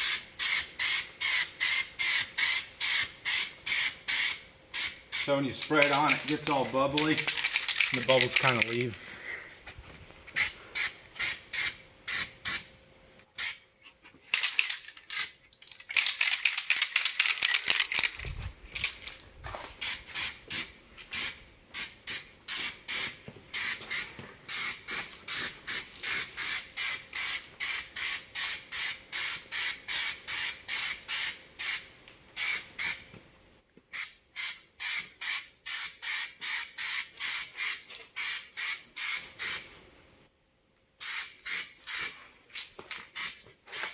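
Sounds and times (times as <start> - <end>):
aerosol can hissing in bursts: 0.0 - 5.3, 10.4 - 12.6, 19.8 - 31.8, 32.4 - 33.0, 34.0 - 39.7, 41.0 - 42.2, 43.2 - 43.8.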